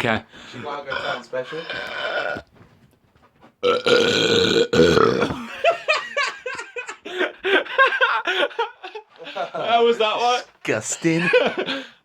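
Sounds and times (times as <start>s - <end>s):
man burping loudly: 0.8s - 2.5s, 3.6s - 5.5s.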